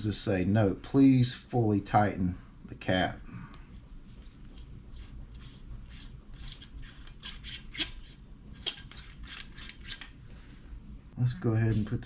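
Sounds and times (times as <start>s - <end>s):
flashlight cap threads rasping: 6.4s - 10.1s.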